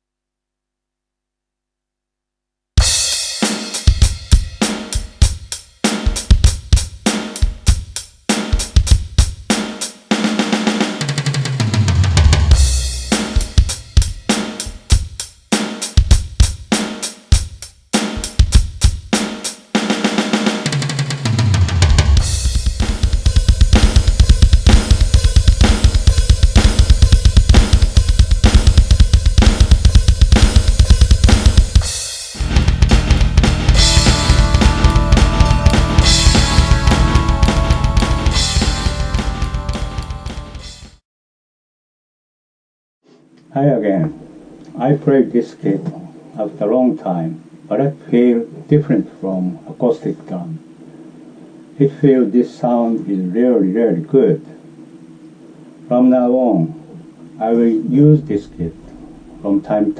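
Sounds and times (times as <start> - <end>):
electronic drum groove: 2.8 - 41.0
fast kick drum strokes: 2.8 - 41.0
tom fills falling in pitch: 32.4 - 40.9.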